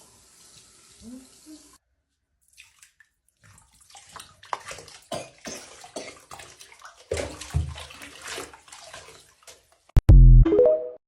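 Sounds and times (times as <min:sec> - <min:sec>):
water splashing in bathtub: 0:02.4 - 0:09.9.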